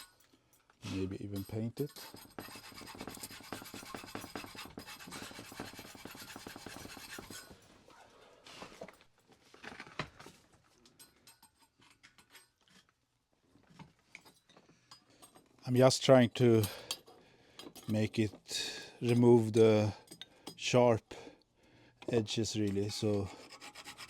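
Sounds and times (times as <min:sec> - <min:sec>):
file scraping metal: 0:00.8 - 0:07.6, 0:22.8 - 0:24.0.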